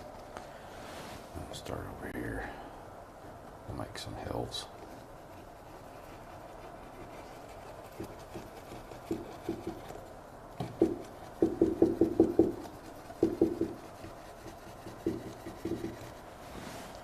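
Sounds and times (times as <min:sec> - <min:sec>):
paintbrush tapping on canvas: 0:07.9 - 0:09.9, 0:10.6 - 0:16.1.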